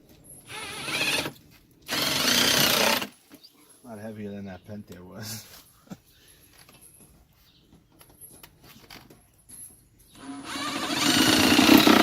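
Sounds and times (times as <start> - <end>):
power drill running: 0.5 - 3.1, 10.2 - 12.0.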